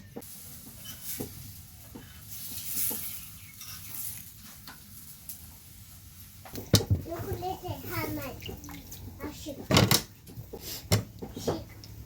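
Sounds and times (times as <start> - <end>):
flatbread sizzling in a pan: 0.0 - 9.0.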